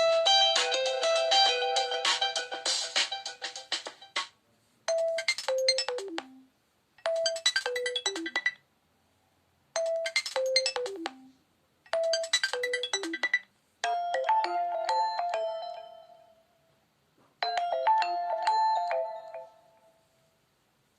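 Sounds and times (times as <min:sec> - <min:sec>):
phone ringtone melody: 0:00.0 - 0:03.7, 0:04.9 - 0:06.5, 0:07.1 - 0:08.6, 0:09.8 - 0:11.4, 0:12.0 - 0:16.6, 0:17.4 - 0:20.2.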